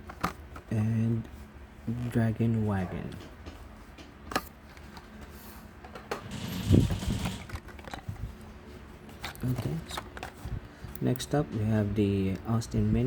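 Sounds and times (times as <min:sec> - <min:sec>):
knocks: 0:06.2 - 0:07.6.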